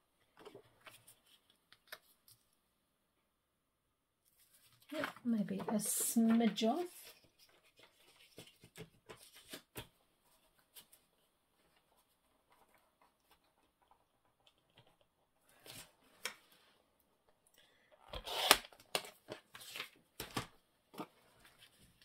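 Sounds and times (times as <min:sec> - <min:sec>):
paper rustling: 0:04.2 - 0:14.0.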